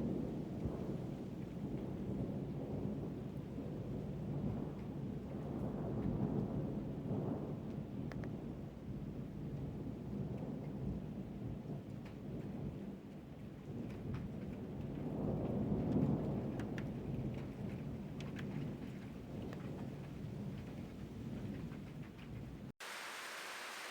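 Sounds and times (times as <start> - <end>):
steady rain: 0.0 - 23.9
thunder rumbling: 13.5 - 22.7.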